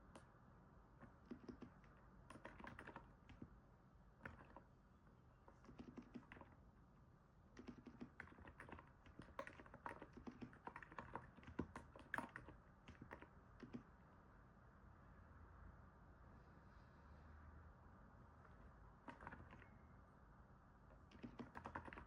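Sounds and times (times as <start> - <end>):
soft keyboard typing: 1.0 - 4.8, 5.4 - 6.7, 7.5 - 14.0, 18.4 - 19.9, 20.9 - 22.0.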